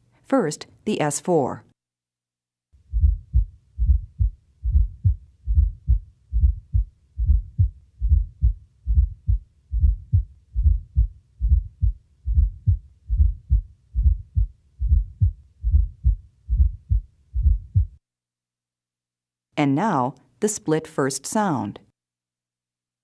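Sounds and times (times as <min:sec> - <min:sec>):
heartbeat through stethoscope: 0:02.9 - 0:18.0.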